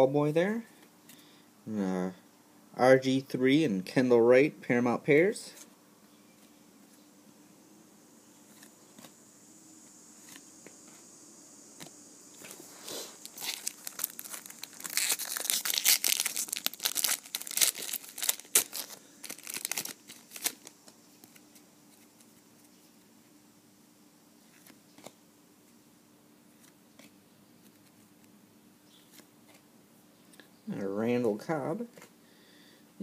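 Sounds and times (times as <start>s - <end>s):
foil wrapper tearing and crinkling: 13.1s - 20.8s.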